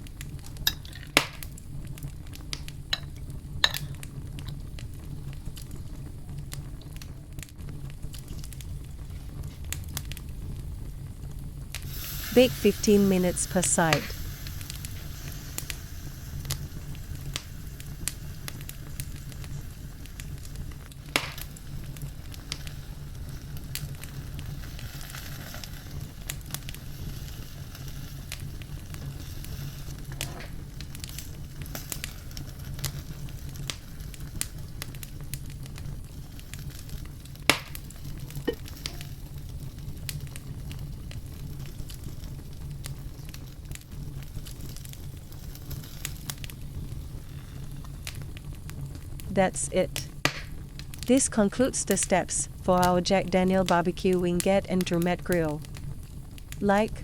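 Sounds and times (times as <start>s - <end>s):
chicken wings sizzling: 0.0s - 57.0s
fat popping: 20.2s - 24.5s, 37.4s - 39.4s, 50.0s - 50.7s.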